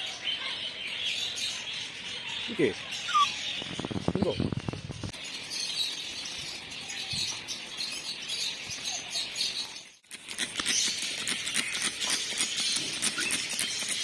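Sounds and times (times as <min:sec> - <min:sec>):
small birds chirping: 0:00.0 - 0:14.0
clicking and scratching: 0:10.0 - 0:14.0.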